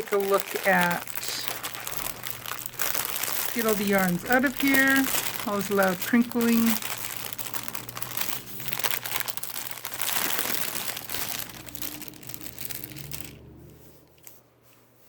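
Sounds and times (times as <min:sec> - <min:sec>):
packaging crinkling: 0:00.0 - 0:14.4.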